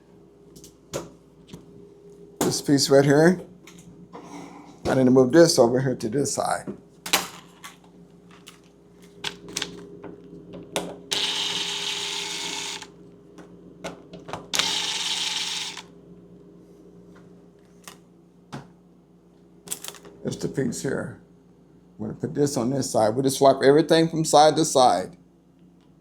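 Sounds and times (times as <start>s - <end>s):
power drill running: 11.1s - 12.9s, 14.5s - 15.9s.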